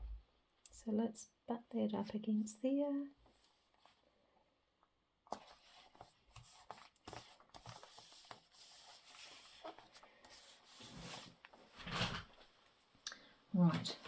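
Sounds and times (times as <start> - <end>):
paper rubbing and rustling: 5.3 - 12.4.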